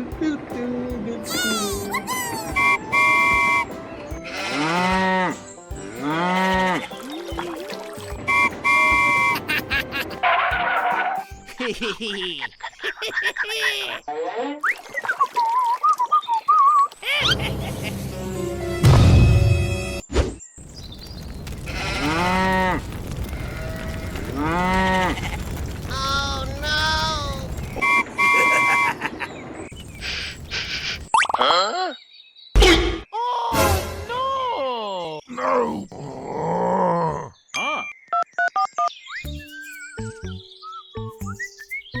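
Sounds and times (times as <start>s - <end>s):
cow mooing: 4.3s - 5.4s
loud thump: 18.8s - 20.4s.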